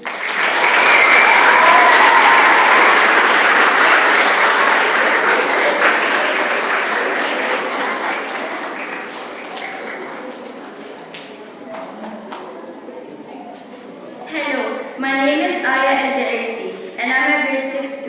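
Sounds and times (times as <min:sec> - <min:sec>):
children clapping: 0:00.0 - 0:12.8.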